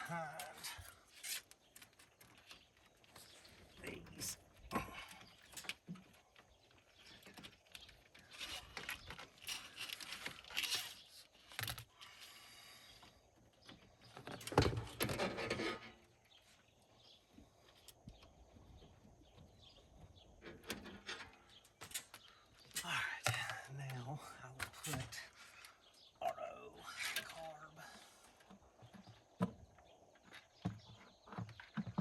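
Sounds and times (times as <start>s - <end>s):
metal clinking and scraping: 15.0s - 16.1s.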